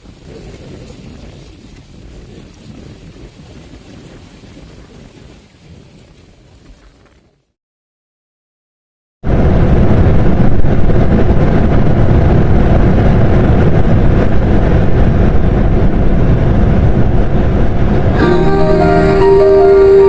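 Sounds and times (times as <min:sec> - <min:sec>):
strong wind on microphone: 0:00.0 - 0:06.7, 0:09.2 - 0:20.0
piano music: 0:18.2 - 0:20.0.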